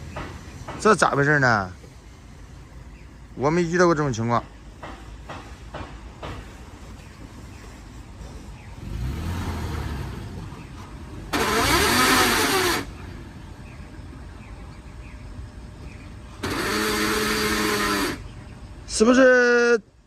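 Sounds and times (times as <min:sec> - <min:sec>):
loud abnormal gear noise: 0:07.4 - 0:18.9
car engine starting and running: 0:08.0 - 0:18.7.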